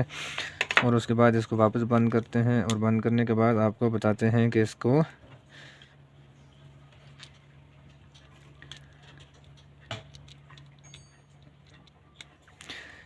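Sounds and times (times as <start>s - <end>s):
faint low hum: 0.0s - 13.0s
clicks and taps of handling parts: 0.4s - 1.0s, 7.0s - 12.7s.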